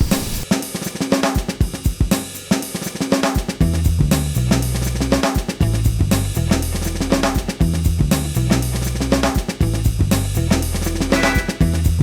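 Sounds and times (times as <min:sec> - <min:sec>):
drum kit playing a beat: 0:00.0 - 0:12.0
bass line: 0:03.6 - 0:12.0.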